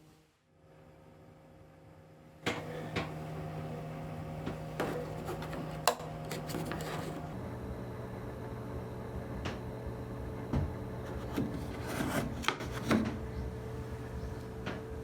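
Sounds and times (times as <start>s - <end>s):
ventilation fan motor humming: 1.6s - 15.0s.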